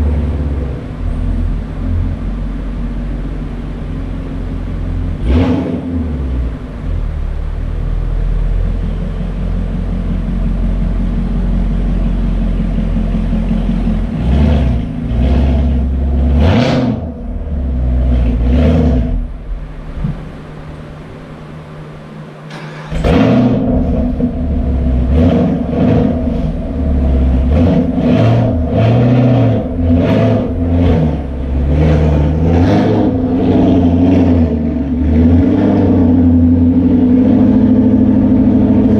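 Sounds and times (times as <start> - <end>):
car engine running: 0.0 - 38.9.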